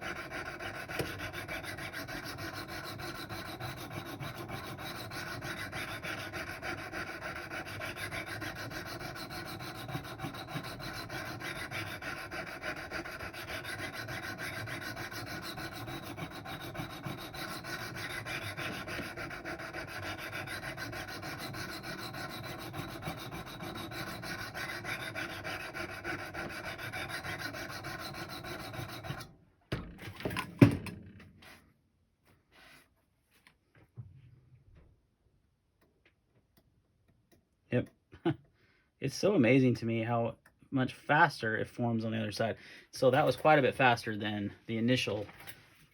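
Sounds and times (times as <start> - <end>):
sharpening stone rasping on blade: 0.0 - 29.2.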